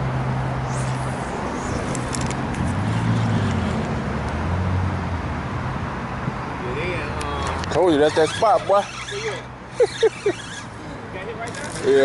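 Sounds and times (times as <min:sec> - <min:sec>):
vehicle engine humming: 0:00.0 - 0:06.1.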